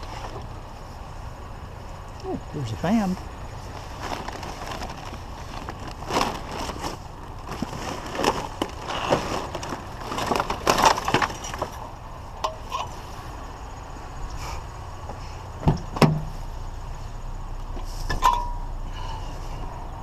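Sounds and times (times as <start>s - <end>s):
plastic and metal parts clattering: 3.7s - 11.9s.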